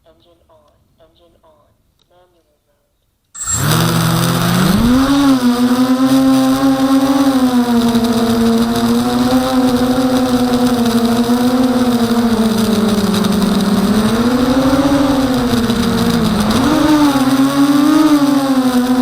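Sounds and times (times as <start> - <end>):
quadcopter motors whining: 3.4 - 19.0.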